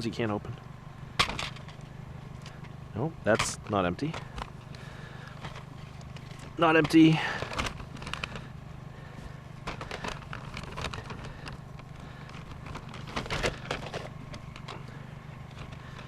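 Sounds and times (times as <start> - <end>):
car engine idling: 0.0 - 16.0
plastic cases clattering: 3.3 - 8.5, 9.6 - 16.0.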